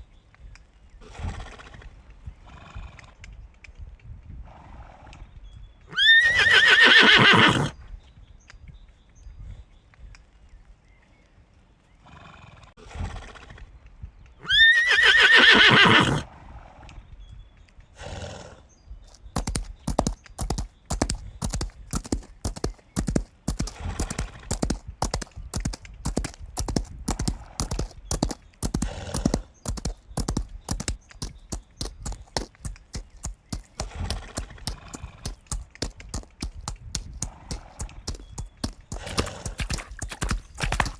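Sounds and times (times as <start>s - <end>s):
horse whinnying: 5.9s - 7.8s, 14.4s - 16.3s
hooves clopping: 19.1s - 40.9s
horse breathing: 19.1s - 40.9s.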